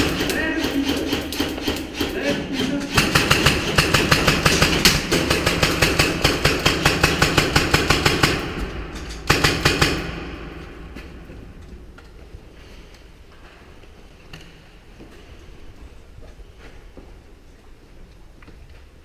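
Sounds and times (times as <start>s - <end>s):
airsoft guns automatic firing: 0.0s - 10.7s.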